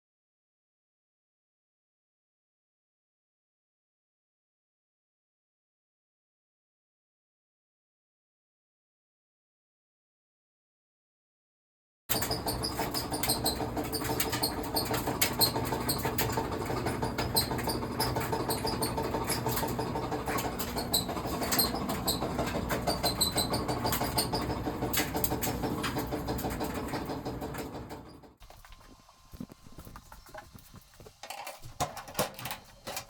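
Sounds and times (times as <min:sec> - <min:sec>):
high squeaks and knocking: 0:12.1 - 0:27.2, 0:27.9 - 0:33.0
clothes dryer drum rumbling: 0:12.1 - 0:33.0.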